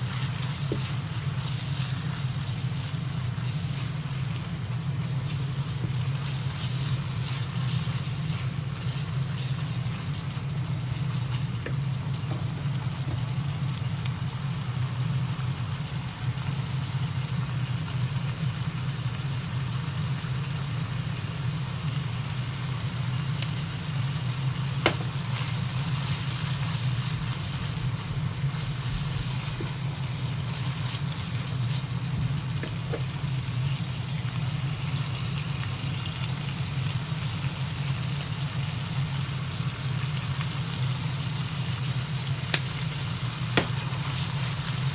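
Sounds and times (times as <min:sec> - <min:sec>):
steady low hum: 0:00.0 - 0:18.8, 0:21.0 - 0:37.0
ground meat sizzling in a pan: 0:00.0 - 0:44.9.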